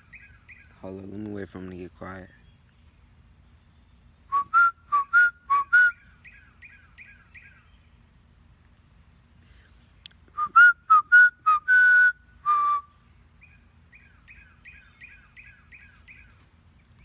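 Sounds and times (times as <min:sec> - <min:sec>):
man whistling: 0:04.3 - 0:06.0, 0:10.4 - 0:12.9
bird two-part calls: 0:13.4 - 0:17.0.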